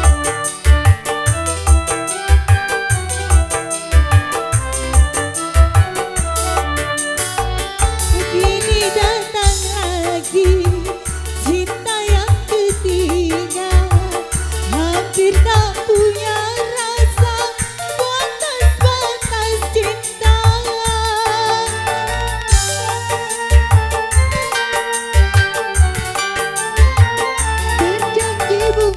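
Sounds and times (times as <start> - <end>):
drum and bass beat: 0.0 - 28.9
gliding keyboard lead melody: 0.0 - 28.9.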